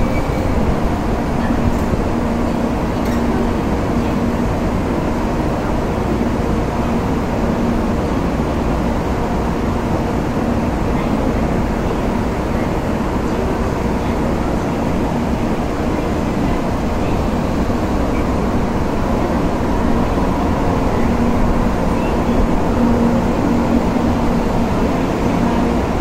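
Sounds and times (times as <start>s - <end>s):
train rumble: 0.0s - 26.0s.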